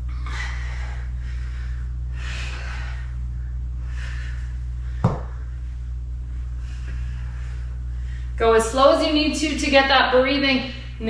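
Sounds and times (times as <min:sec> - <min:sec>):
woman breathing hard: 0:00.0 - 0:08.4
steady low hum: 0:00.0 - 0:11.0
short thump: 0:05.0 - 0:05.4.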